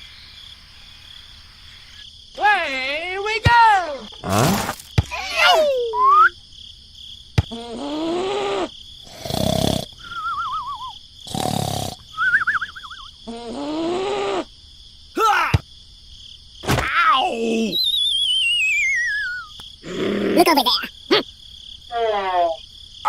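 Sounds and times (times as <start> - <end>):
wobbling whistle tones: 10.0 - 11.0, 12.1 - 13.1, 17.7 - 19.6
creature-like groans: 19.8 - 20.6.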